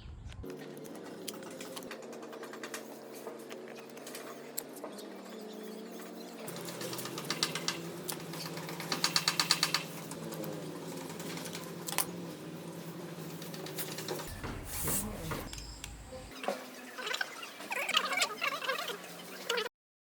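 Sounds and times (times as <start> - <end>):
rapid clicks: 0.4 - 14.6
small motor whirring: 0.4 - 19.7.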